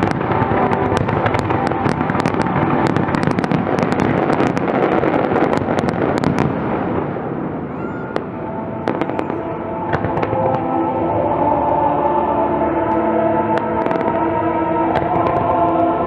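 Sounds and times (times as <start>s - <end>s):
fireworks cracking and popping: 0.0s - 10.7s
fireworks rumble: 0.0s - 16.0s.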